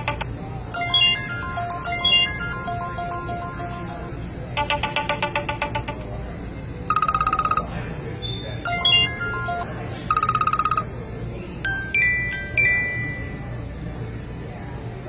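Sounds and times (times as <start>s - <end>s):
chime-like notes: 0.8s - 4.1s, 8.7s - 9.9s
pulsing electronic trill: 0.8s - 6.0s, 8.7s - 9.7s.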